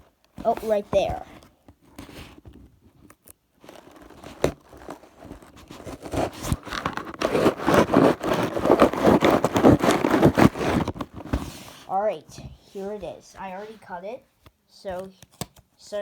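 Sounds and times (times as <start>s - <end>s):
blade cutting through cardboard: 3.9s - 11.7s.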